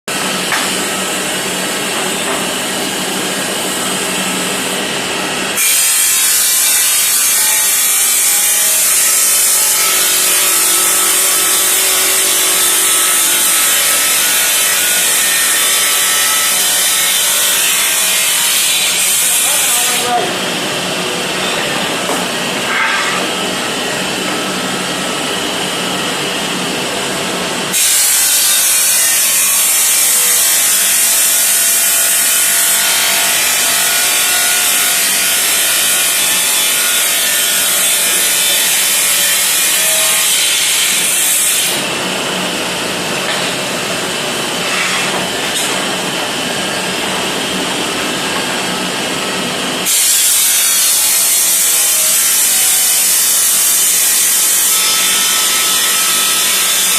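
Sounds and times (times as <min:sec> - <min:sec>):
tile-cutting machine humming: 0:00.1 - 0:56.9
blade cutting tile with hiss: 0:05.6 - 0:20.2, 0:27.7 - 0:41.8, 0:44.6 - 0:45.9, 0:49.8 - 0:56.9.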